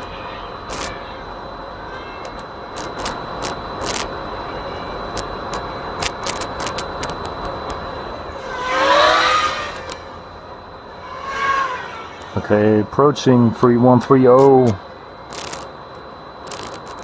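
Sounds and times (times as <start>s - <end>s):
outdoor noise: 0.0s - 17.0s
vehicle passing: 8.3s - 12.8s.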